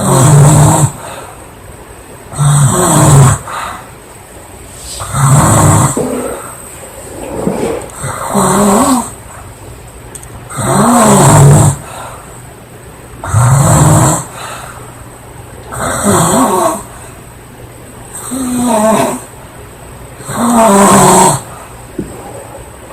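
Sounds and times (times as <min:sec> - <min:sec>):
woman snoring: 0:00.0 - 0:01.2, 0:02.3 - 0:03.6, 0:05.0 - 0:06.5, 0:08.0 - 0:09.2, 0:10.5 - 0:11.9, 0:13.2 - 0:14.4, 0:15.7 - 0:16.9, 0:18.2 - 0:19.3, 0:20.2 - 0:21.5.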